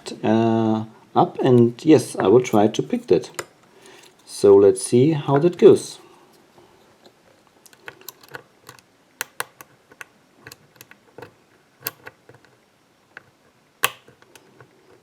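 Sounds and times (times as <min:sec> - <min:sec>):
lock pick clicking on pins: 0:07.7 - 0:12.5, 0:13.8 - 0:14.7.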